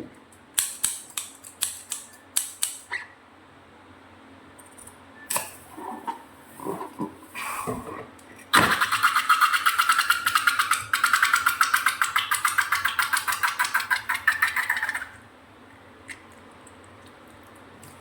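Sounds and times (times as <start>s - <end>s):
air rushing out of balloon: 5.7s - 8.0s.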